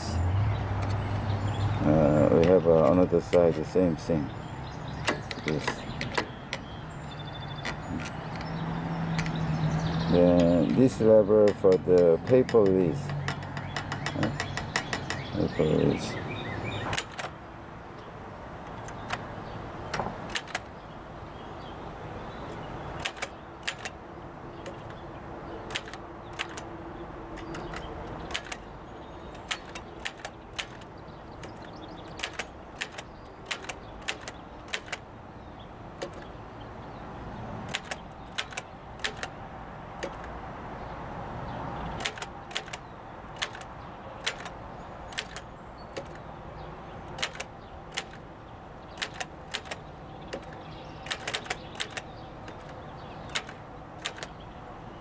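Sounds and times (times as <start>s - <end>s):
steady background noise: 0.0s - 55.0s
typewriter keystroke clacks: 10.2s - 15.3s, 16.9s - 17.4s, 20.0s - 20.7s, 23.0s - 24.0s, 25.7s - 26.7s, 27.4s - 28.7s, 29.3s - 35.1s, 36.0s - 36.3s, 37.7s - 39.4s, 40.0s - 40.3s, 42.0s - 46.2s, 47.1s - 54.4s.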